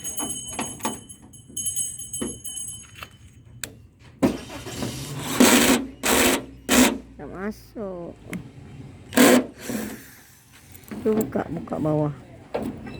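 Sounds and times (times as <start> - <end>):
keys jangling: 0.0 - 3.4.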